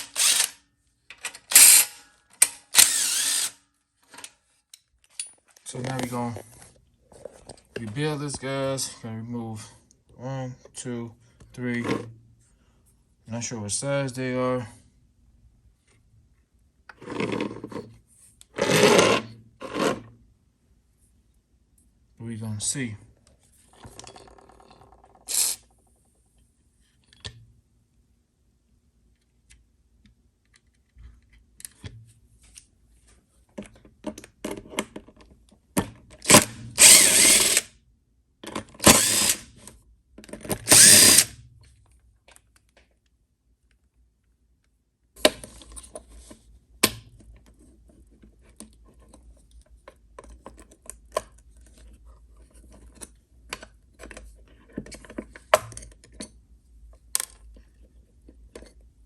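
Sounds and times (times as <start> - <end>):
power drill-driver running: 0.0 - 0.6, 1.5 - 3.6, 25.3 - 25.6, 36.3 - 37.7, 38.8 - 39.5, 40.7 - 41.4.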